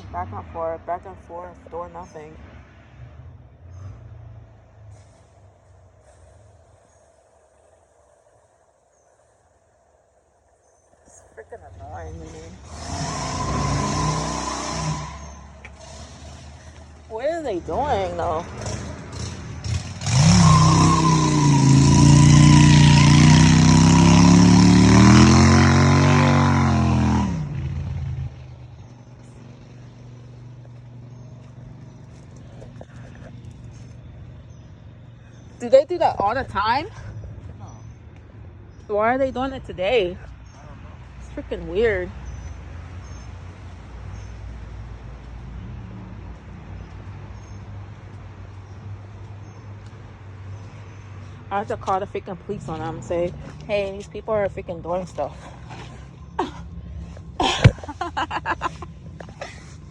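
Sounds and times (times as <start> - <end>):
motor vehicle engines droning: 0.0 - 59.9
vehicle engine revving past: 12.1 - 32.8.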